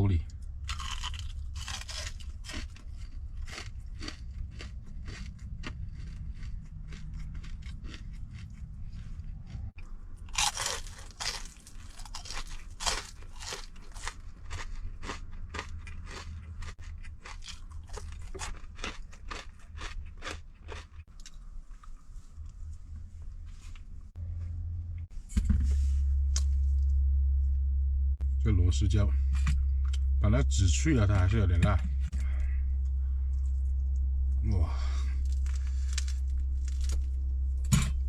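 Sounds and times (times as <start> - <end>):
low rumble: 0.0 - 18.8, 21.2 - 38.0
chewing crunchy food: 0.7 - 22.6, 34.8 - 37.2.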